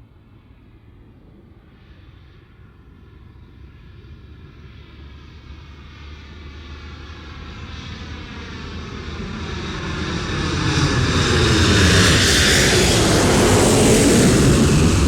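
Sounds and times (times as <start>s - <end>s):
jet airliner flying by: 0.0s - 15.0s.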